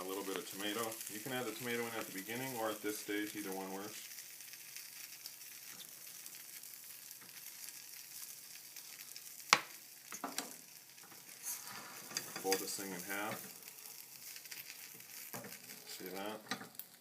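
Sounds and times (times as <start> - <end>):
omelette sizzling in a pan: 0.0 - 17.0.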